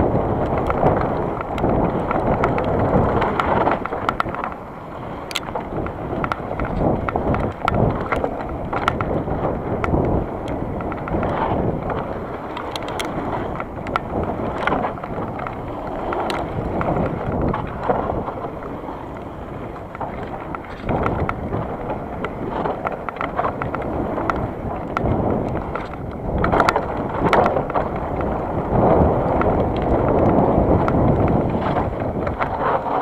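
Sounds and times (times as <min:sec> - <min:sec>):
light clicks and crunches: 0:00.0 - 0:33.0
wind rumbling on microphone: 0:00.0 - 0:33.0.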